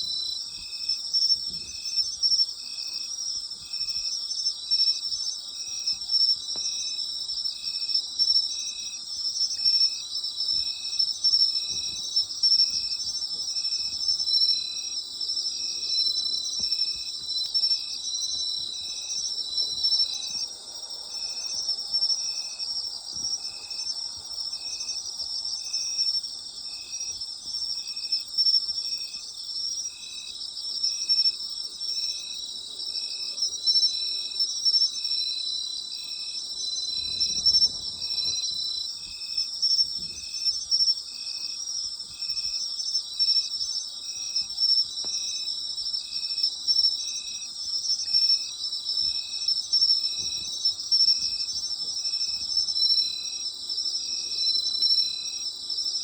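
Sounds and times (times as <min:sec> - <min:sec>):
insect chirping rhythmically: 0:00.0 - 0:56.0
insects trilling: 0:00.0 - 0:56.0.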